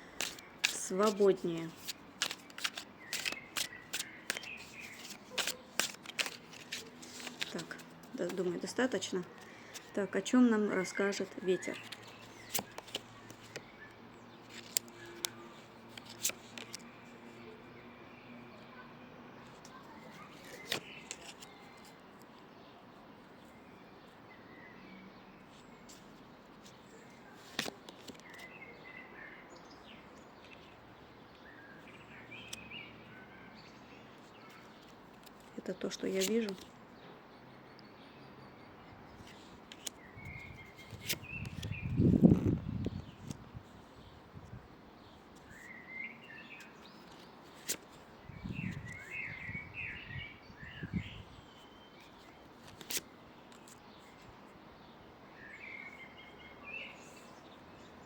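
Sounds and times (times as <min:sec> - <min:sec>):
small birds chirping: 0:00.0 - 0:58.0
faint bird chirps: 0:45.0 - 0:58.0.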